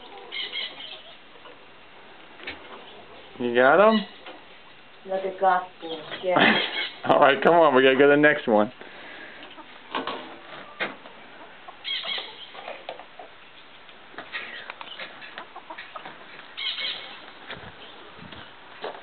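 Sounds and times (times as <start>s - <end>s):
hen squawking: 0.0s - 1.2s, 3.8s - 4.2s, 5.9s - 7.1s, 11.4s - 12.6s, 16.6s - 17.3s
hens clucking: 0.0s - 19.0s.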